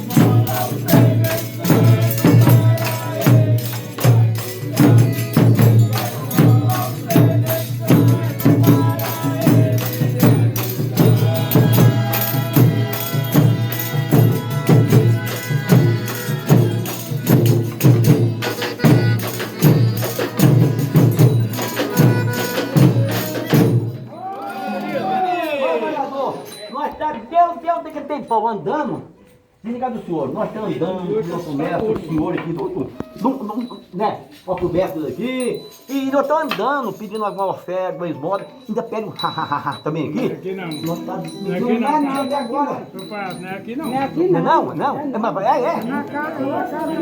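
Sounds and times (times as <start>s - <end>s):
pitched instrumental notes: 0.0s - 24.2s
tambourines and percussion beating: 0.0s - 24.2s, 33.0s - 37.6s.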